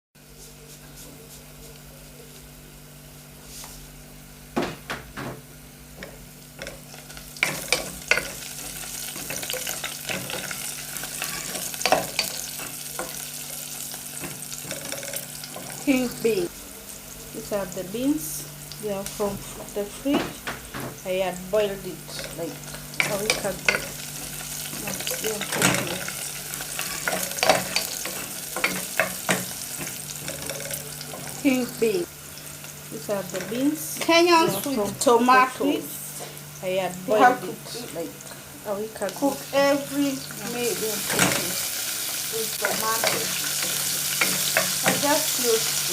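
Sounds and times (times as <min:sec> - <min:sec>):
food sizzling in hot oil: 0:05.4 - 0:45.9
stirring scrapes in a pan: 0:23.3 - 0:31.4.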